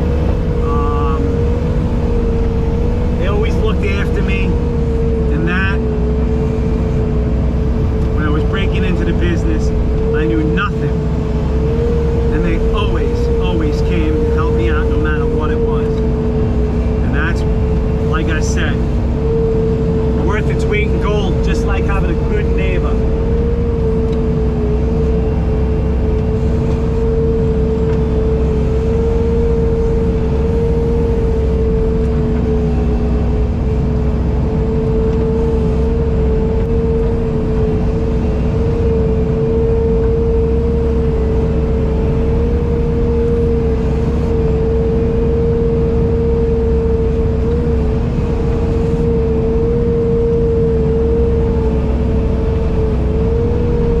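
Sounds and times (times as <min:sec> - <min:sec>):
engine whining and rumbling: 0:00.0 - 0:54.0.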